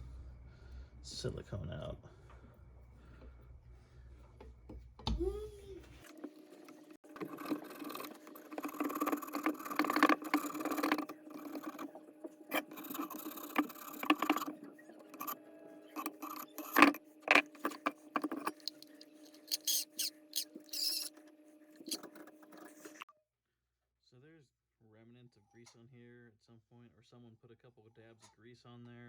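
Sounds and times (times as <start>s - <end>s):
tool clicking on metal: 7.0s - 15.4s, 16.0s - 21.1s
tool scraping metal: 7.0s - 21.2s, 21.8s - 23.0s.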